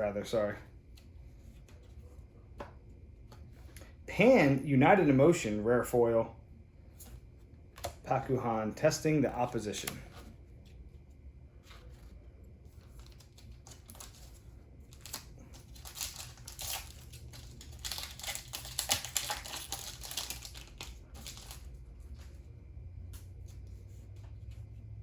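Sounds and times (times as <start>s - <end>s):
foil pack crinkling: 12.8s - 22.2s.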